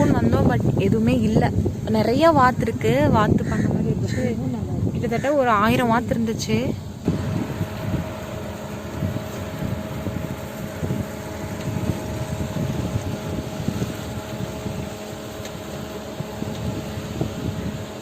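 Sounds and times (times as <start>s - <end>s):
faint steady hum: 0.0s - 18.0s
car engine and road noise: 6.8s - 18.0s.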